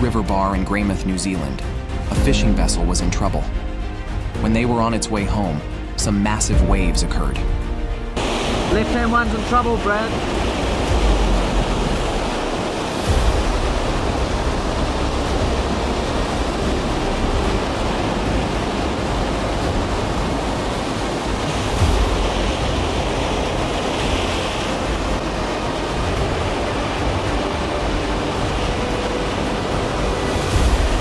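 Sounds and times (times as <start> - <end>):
heavy surf breaking: 0.0 - 31.0
wind buffeting microphone: 7.4 - 31.0.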